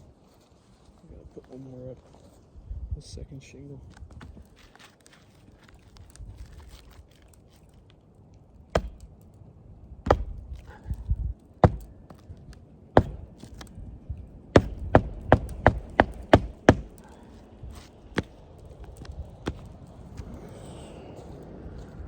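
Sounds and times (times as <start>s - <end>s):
hammer driving roofing nails: 8.8s - 9.1s, 10.1s - 10.7s, 11.6s - 12.2s, 13.0s - 13.7s, 14.5s - 17.2s.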